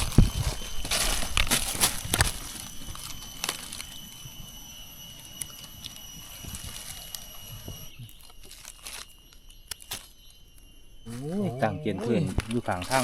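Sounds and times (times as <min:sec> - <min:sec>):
dry leaf litter crackling: 0:00.0 - 0:10.2, 0:11.1 - 0:13.0
high-pitched whine: 0:00.0 - 0:13.0.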